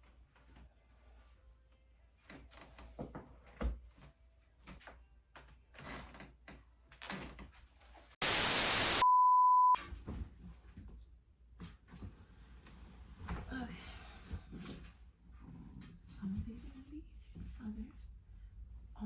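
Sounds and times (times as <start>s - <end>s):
static hiss burst: 8.2s - 9.1s
high electronic beep: 8.2s - 9.8s.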